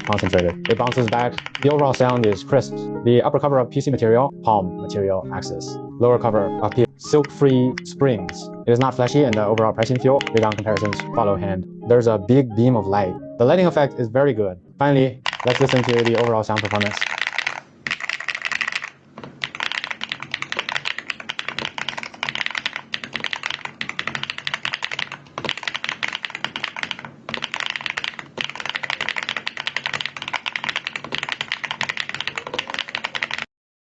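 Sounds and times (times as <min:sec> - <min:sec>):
mechanical keyboard typing: 0:00.0 - 0:02.6, 0:06.6 - 0:11.2, 0:15.2 - 0:33.5.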